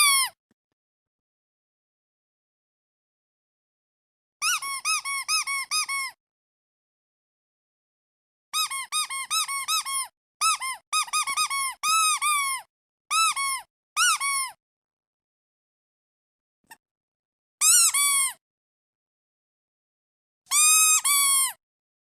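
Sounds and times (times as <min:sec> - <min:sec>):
rubber duck squeaking: 0:00.0 - 0:00.4, 0:04.4 - 0:06.2, 0:08.6 - 0:14.6, 0:17.6 - 0:18.4, 0:20.5 - 0:21.6.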